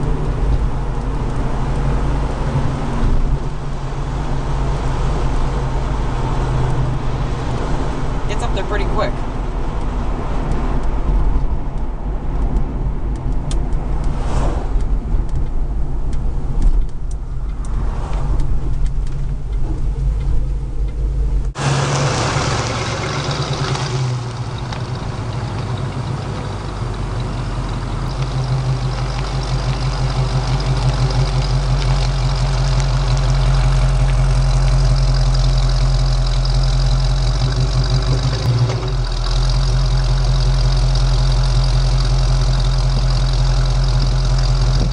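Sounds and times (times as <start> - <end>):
car engine rumbling: 0.0 - 44.9
car engine idling: 18.4 - 44.9.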